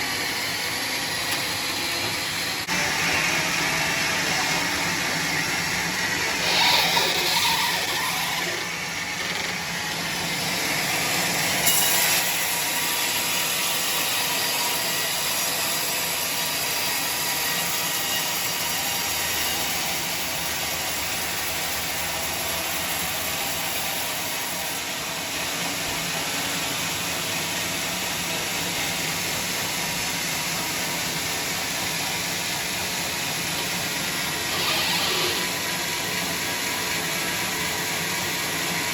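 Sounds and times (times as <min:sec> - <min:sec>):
sawmill saw running: 0:00.0 - 0:38.9.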